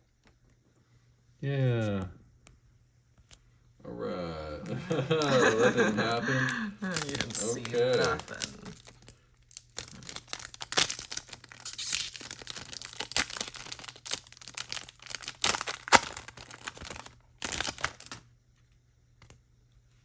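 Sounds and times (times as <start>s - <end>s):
foil wrapper tearing and crinkling: 7.0s - 18.3s.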